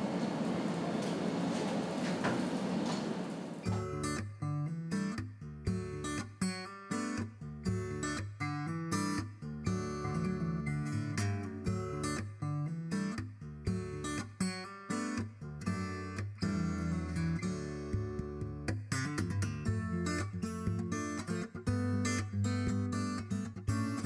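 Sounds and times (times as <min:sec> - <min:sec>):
strummed acoustic guitar: 0:00.0 - 0:24.0.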